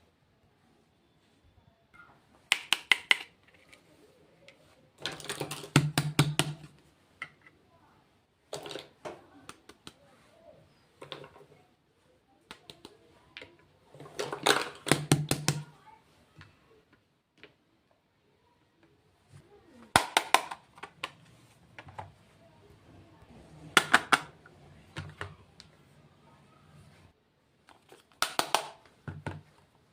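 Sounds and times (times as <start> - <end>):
packaging clicks and taps: 2.4 - 7.5, 12.4 - 13.6, 14.4 - 15.7, 19.8 - 22.1, 27.7 - 29.6.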